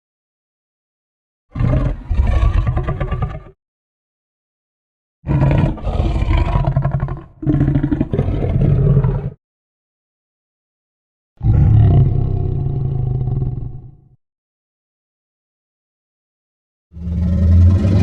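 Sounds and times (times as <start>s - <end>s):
monster roar: 5.3s - 9.4s, 11.4s - 14.0s, 17.0s - 18.0s.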